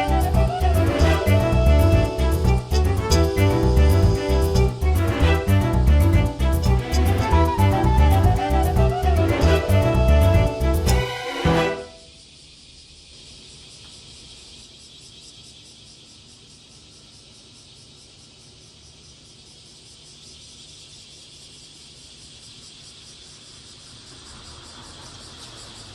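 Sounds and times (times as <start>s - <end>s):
background music: 0.0s - 12.0s
insects chirring: 0.0s - 25.9s.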